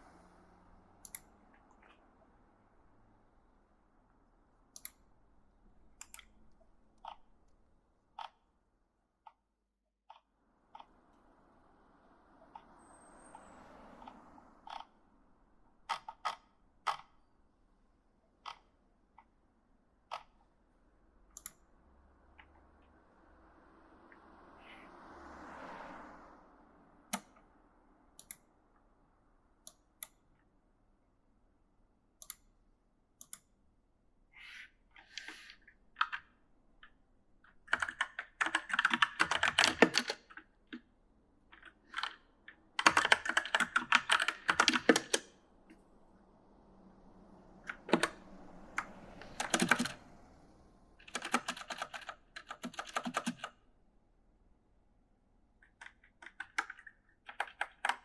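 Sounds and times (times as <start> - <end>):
mechanical keyboard typing: 15.9 - 17.2, 35.1 - 36.3, 37.6 - 40.5, 41.6 - 42.2, 42.8 - 45.3, 47.7 - 48.2, 48.8 - 50.0, 51.0 - 53.6, 55.6 - 58.0.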